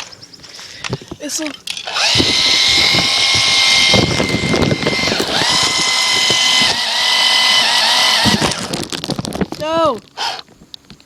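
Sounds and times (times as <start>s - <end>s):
rough crackling: 0.0s - 11.0s
toy car electric motor whining: 1.8s - 8.9s, 10.2s - 10.4s.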